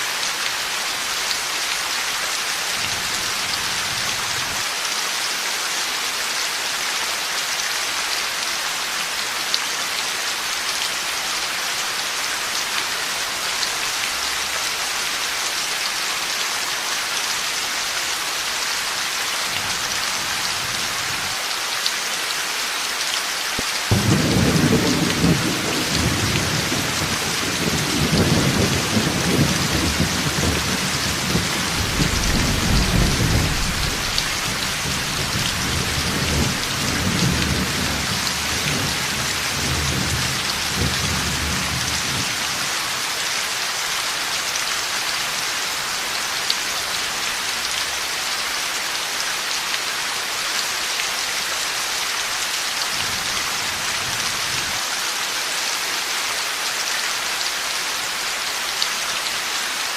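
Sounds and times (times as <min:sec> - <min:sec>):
heavy rain falling: 0:00.0 - 0:59.9
thunder rumbling: 0:23.9 - 0:41.1.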